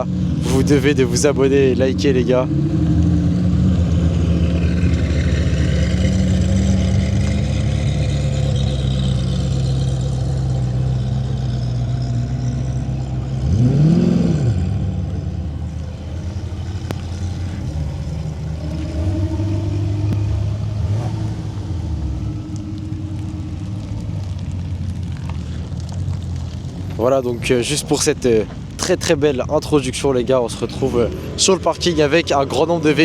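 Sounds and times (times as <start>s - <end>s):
sports car engines running: 0.0s - 33.0s.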